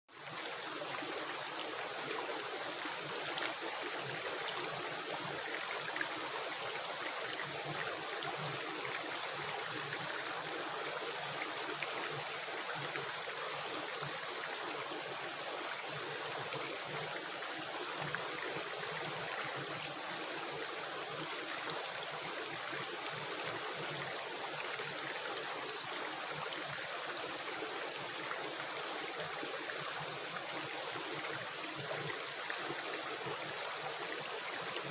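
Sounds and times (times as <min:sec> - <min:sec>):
stream water rushing: 0:00.1 - 0:34.9.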